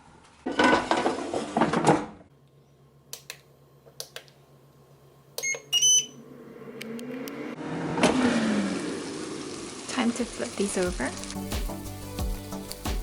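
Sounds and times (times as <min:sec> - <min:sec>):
fan humming: 0:00.9 - 0:13.0
electronic beeps: 0:05.4 - 0:06.2.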